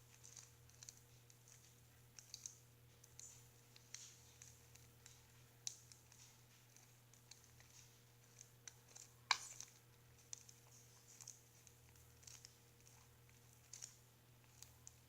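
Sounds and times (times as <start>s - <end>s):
slime squelching as kneaded: 0.0s - 15.0s
slime pop: 8.8s - 10.4s.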